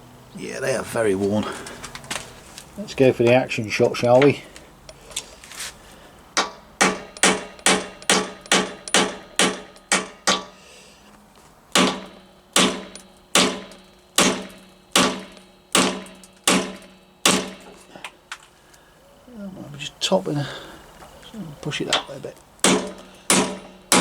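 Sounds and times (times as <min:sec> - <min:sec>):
hammer blows on metal: 0:22.6 - 0:24.0.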